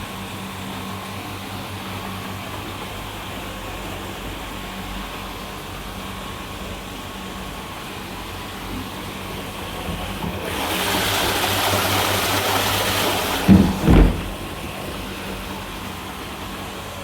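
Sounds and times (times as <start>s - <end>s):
ice machine humming: 0.0s - 17.0s
heavy thumps: 13.5s - 14.8s.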